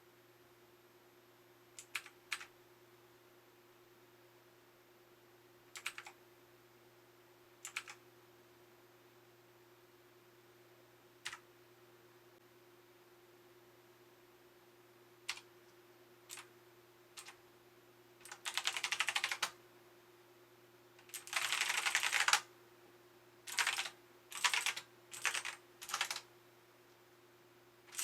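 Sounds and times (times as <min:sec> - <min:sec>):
mechanical keyboard typing: 0:01.8 - 0:02.5, 0:05.8 - 0:06.2, 0:07.7 - 0:08.0, 0:17.2 - 0:17.4, 0:18.2 - 0:19.6, 0:21.0 - 0:22.5, 0:23.5 - 0:26.2.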